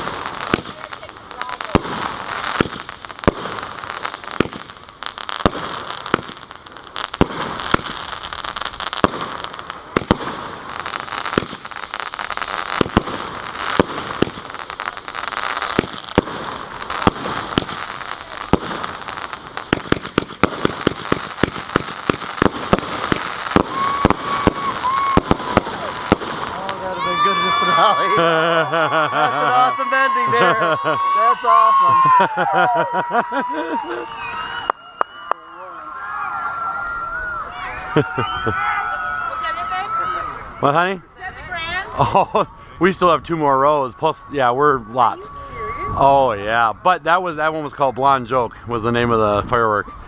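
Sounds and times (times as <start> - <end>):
firework sharp reports: 0.0 - 32.6
firework crackling: 0.0 - 35.4.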